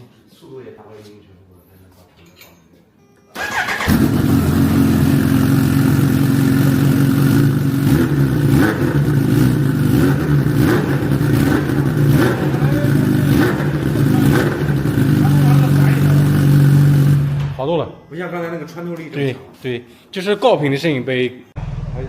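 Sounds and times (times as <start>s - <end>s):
motorcycle engine idling: 3.4s - 17.4s.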